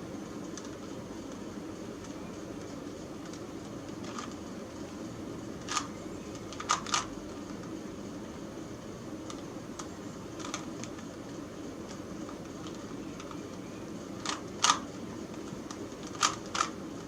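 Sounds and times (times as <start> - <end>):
low background hum: 0.0 - 17.0
puzzle cube plastic clacks: 5.6 - 7.1, 14.2 - 16.8.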